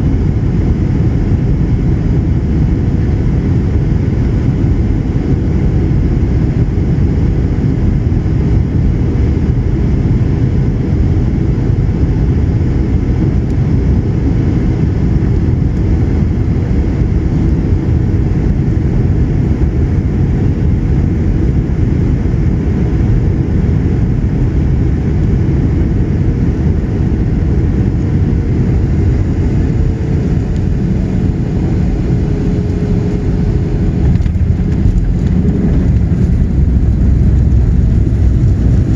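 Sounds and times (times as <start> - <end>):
jet engine drone in cabin: 0.0 - 38.9
rushing airflow: 0.0 - 38.9
faint engine tone: 25.9 - 38.9.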